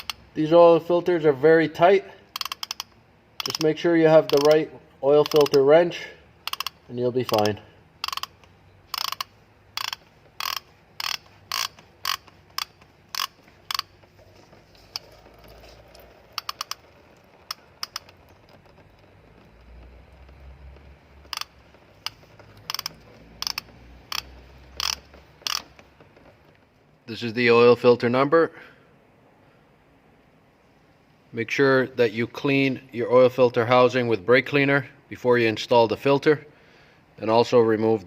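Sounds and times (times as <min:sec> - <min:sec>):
ratchet clicking: 0:00.0 - 0:00.3, 0:02.3 - 0:05.7, 0:06.4 - 0:14.0, 0:16.3 - 0:26.3.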